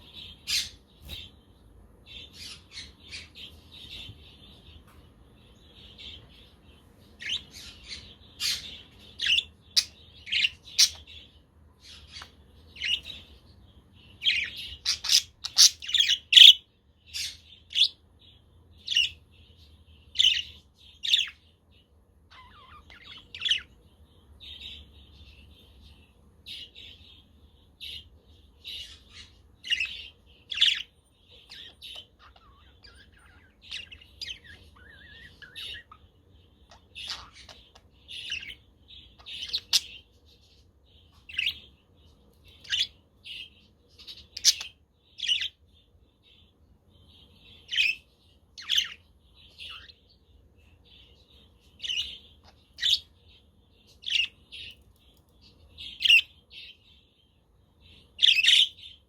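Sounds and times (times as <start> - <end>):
budgerigars chirping: 0.0 - 1.4, 7.2 - 11.3, 11.9 - 13.4, 14.0 - 18.0, 18.8 - 21.4, 22.3 - 23.8, 28.7 - 40.1, 42.5 - 45.6, 47.1 - 50.1, 50.9 - 54.8, 55.8 - 56.8, 57.9 - 59.0.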